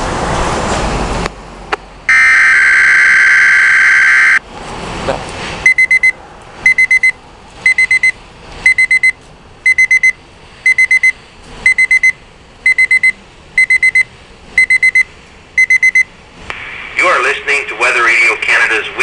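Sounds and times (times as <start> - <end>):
radio alarm high beeps: 2.1 - 4.4, 5.7 - 16.1.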